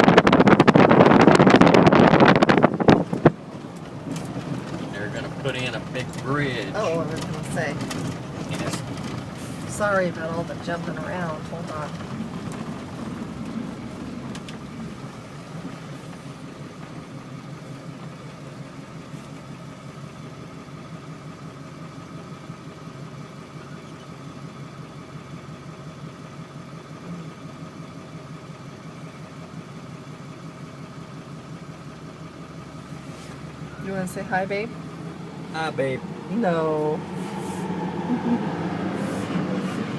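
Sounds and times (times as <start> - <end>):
car engine running from inside: 0.0 - 39.9.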